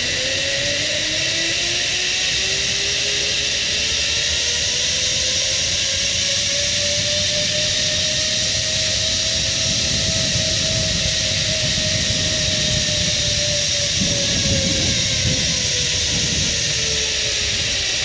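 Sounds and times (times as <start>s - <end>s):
pulleys whining on steel cable: 0.0s - 18.0s
wind rushing: 7.0s - 18.0s.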